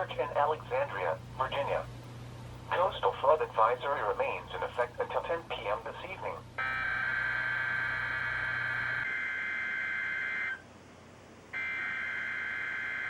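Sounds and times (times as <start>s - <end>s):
harsh digital data buzz: 6.6s - 10.6s, 11.6s - 13.0s.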